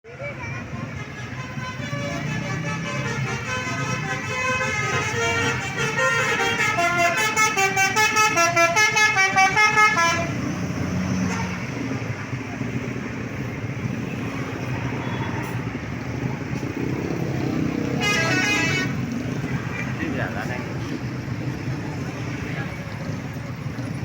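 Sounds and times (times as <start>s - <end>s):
street traffic noise: 0.0s - 24.0s
multi-note musical bus horn: 0.6s - 11.8s, 17.9s - 19.9s.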